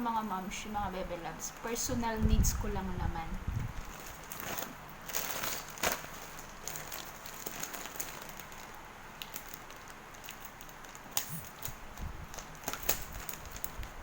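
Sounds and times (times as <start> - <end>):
plastic wrapping crackling: 3.6 - 14.0.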